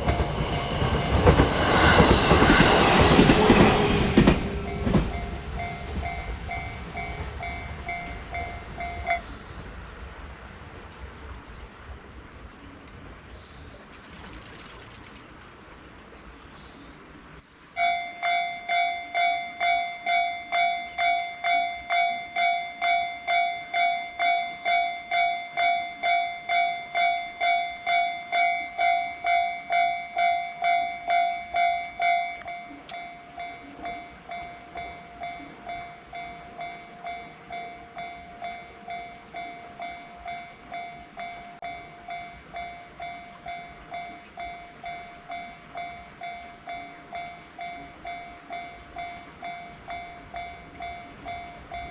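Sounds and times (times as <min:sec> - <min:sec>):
level crossing warning bell: 0:03.4 - 0:09.3, 0:17.8 - 0:51.9.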